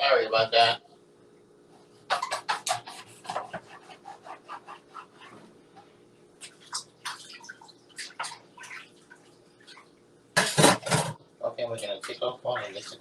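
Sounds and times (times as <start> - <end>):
wet squelches of raw chicken: 3.9 - 10.2.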